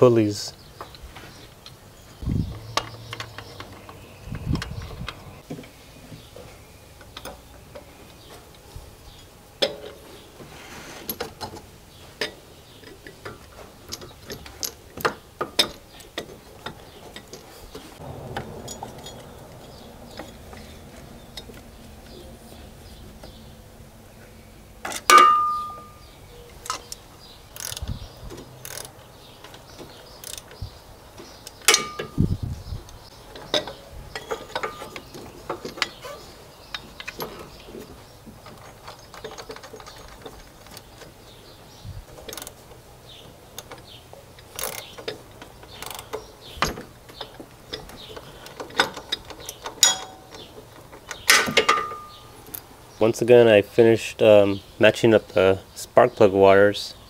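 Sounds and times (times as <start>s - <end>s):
metal tools clicking and knocking: 11.1s - 17.8s, 24.8s - 26.0s, 31.4s - 32.2s, 33.3s - 37.5s, 38.4s - 41.2s, 43.6s - 52.6s
loud metallic clank: 18.0s - 20.9s, 25.0s - 26.0s
ratchet wrench clicking: 27.5s - 27.9s, 28.6s - 29.0s, 30.2s - 30.5s, 44.5s - 44.9s.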